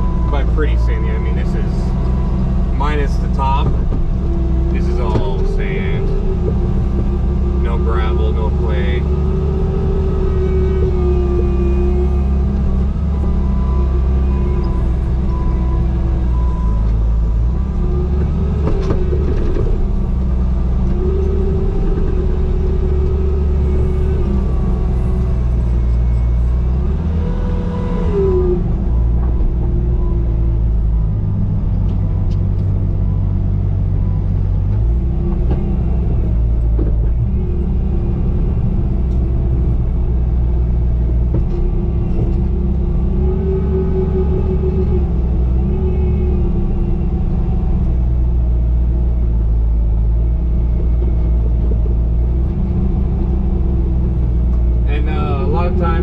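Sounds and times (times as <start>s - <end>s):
whine shifting in pitch: 0.0s - 17.0s
diesel engine under load: 0.0s - 56.0s.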